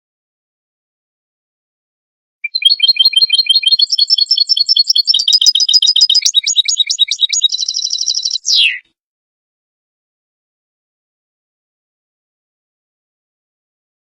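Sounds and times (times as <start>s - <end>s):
goldfinch twittering song: 2.4s - 8.8s.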